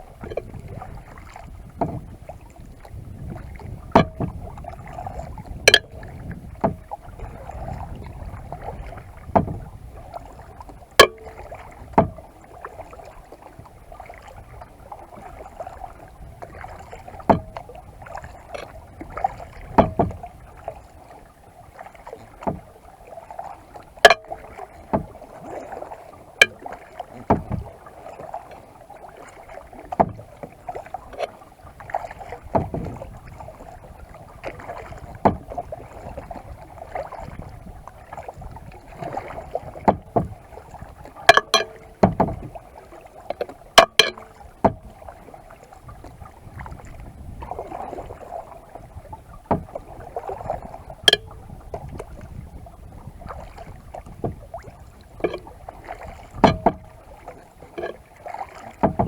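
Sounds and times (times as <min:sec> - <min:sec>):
paddle splashing water: 0:00.0 - 0:59.0
sharp knocks: 0:04.0 - 0:04.4, 0:05.7 - 0:06.8, 0:11.0 - 0:12.2, 0:17.3 - 0:17.6, 0:24.1 - 0:24.4, 0:41.3 - 0:42.4, 0:43.4 - 0:44.9, 0:51.1 - 0:51.4, 0:55.2 - 0:55.5, 0:56.4 - 0:56.9.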